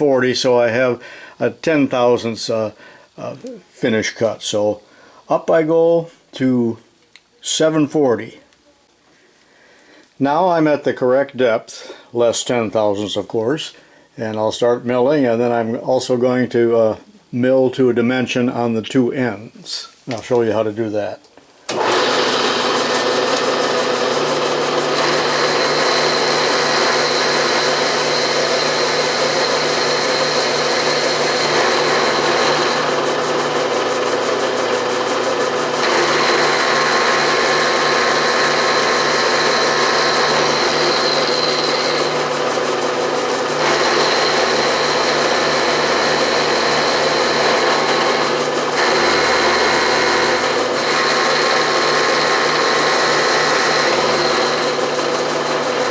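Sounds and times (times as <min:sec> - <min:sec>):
milling machine motor hum: 0:21.7 - 0:55.9.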